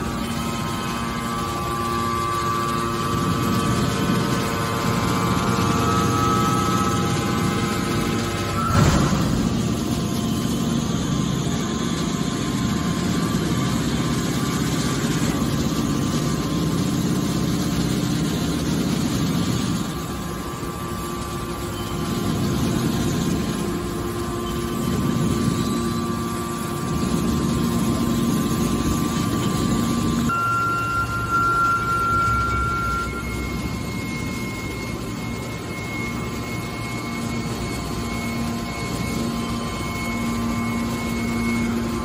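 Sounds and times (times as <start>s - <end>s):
baler machine drone with whine: 0.0s - 42.0s.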